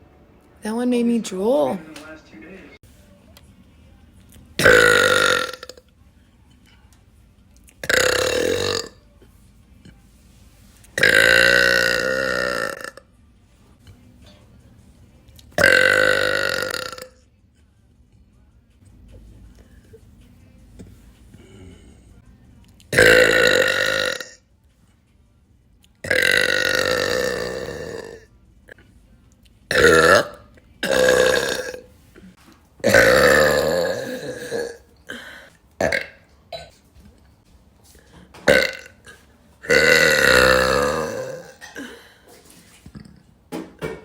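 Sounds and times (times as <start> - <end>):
woman burping loudly: 4.6 - 5.8, 7.8 - 9.0, 11.0 - 13.0, 15.6 - 17.2, 22.9 - 24.4, 26.0 - 28.3, 29.7 - 31.9, 32.8 - 36.7, 38.5 - 42.1.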